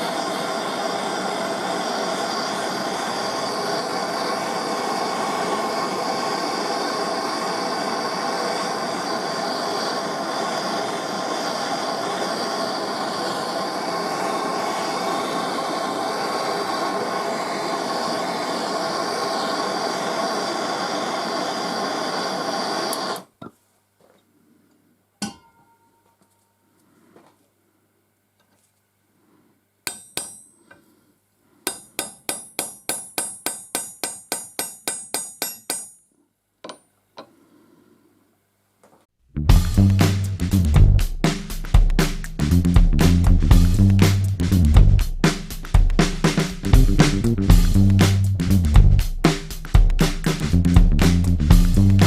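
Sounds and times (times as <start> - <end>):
sharp metallic clink: 29.9 - 30.6.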